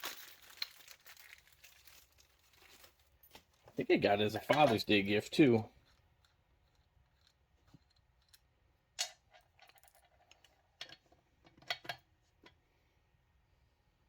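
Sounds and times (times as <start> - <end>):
small metal parts clicking: 5.8 - 11.0.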